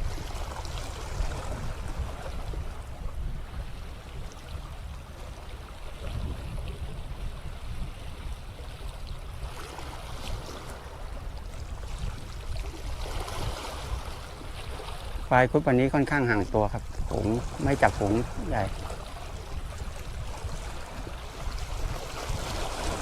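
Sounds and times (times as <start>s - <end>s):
wind rumbling on microphone: 0.0s - 23.0s
sea waves washing against rocks: 9.5s - 23.0s.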